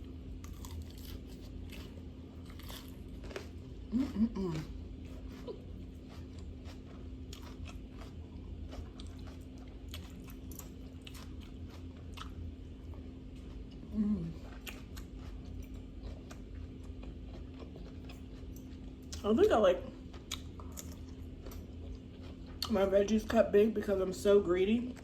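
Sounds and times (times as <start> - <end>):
chewing crunchy salad: 0.0 - 25.0
faint steady hum: 0.0 - 25.0
person humming: 3.9 - 4.7, 13.9 - 14.4.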